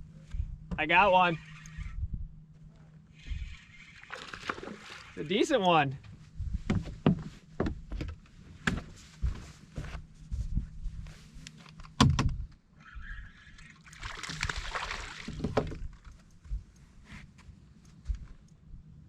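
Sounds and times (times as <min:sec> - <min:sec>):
low steady hum: 0:00.0 - 0:19.0
knocks and bumps in boat: 0:06.6 - 0:09.0, 0:15.2 - 0:16.0.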